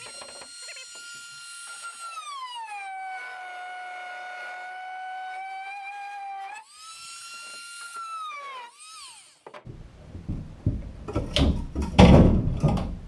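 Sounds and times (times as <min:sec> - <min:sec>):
oscillating multi-tool whine: 0:00.0 - 0:09.6
knocks and bumps: 0:09.4 - 0:13.0.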